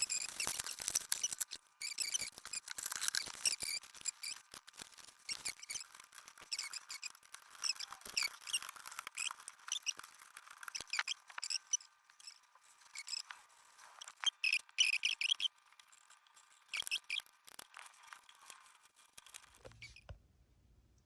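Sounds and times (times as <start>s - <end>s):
wipe squeaking on metal: 19.6s - 20.1s.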